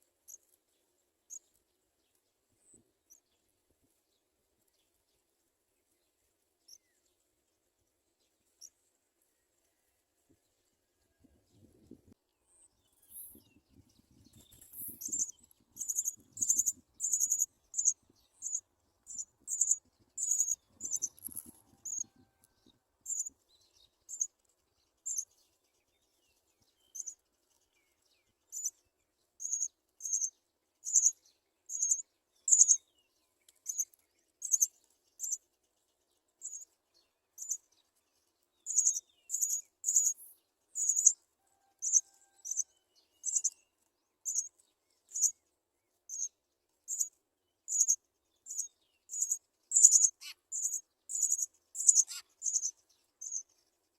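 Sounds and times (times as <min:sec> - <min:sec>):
sparrow chirping: 0:12.5 - 0:22.2, 0:23.0 - 0:25.5, 0:26.7 - 0:45.4, 0:46.0 - 0:53.8.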